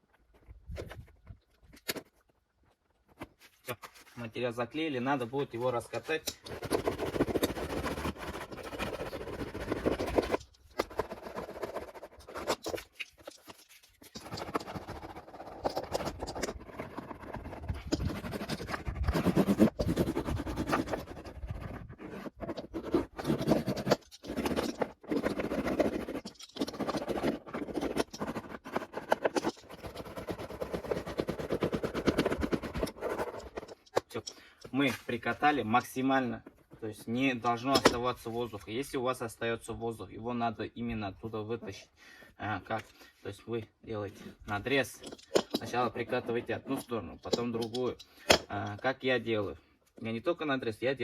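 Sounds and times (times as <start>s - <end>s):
hand roller scraping on panel: 6.5s - 33.8s.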